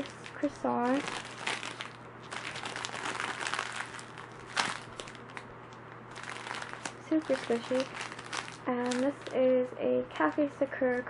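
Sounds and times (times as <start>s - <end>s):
plastic wrapper crinkling: 0.0s - 9.5s.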